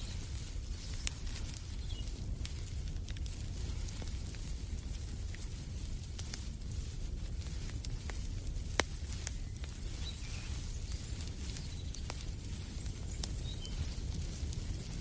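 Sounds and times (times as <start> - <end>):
wood fire crackling: 0.0 - 15.0
faint bird chirps: 9.9 - 12.2.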